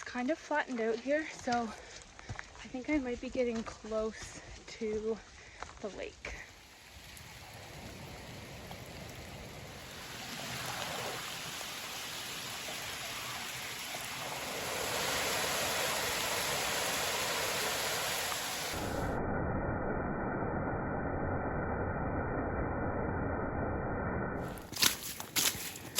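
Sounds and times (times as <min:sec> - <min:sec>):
heavy rain: 0:06.4 - 0:19.0
stream rushing: 0:06.5 - 0:19.0.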